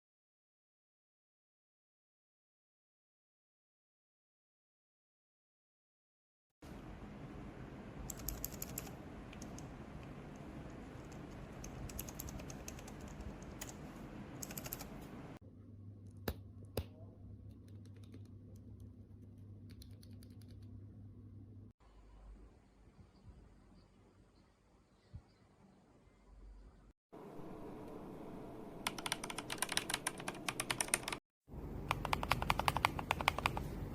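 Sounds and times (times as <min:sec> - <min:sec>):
low hum: 0:26.2 - 0:32.1.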